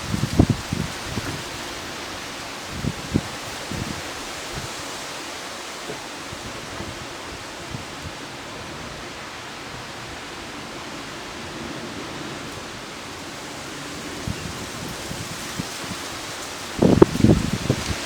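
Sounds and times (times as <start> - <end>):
heavy rain pouring: 0.0 - 18.0
raindrops tapping nearby: 14.8 - 18.0.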